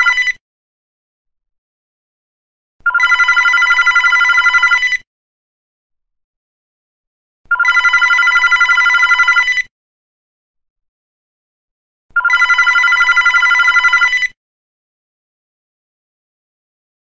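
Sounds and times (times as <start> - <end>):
telephone bell ringing: 0.0 - 0.4, 2.9 - 5.0, 7.5 - 9.7, 12.2 - 14.4.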